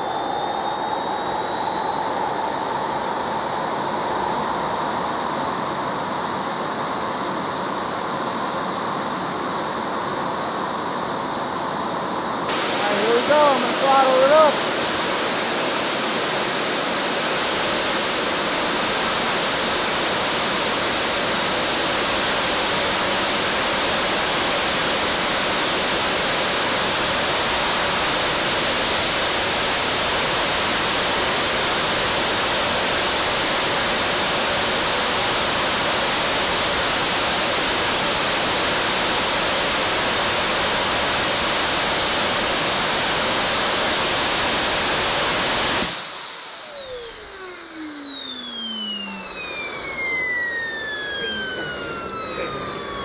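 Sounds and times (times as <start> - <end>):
turbojet engine roaring: 0.0 - 53.0.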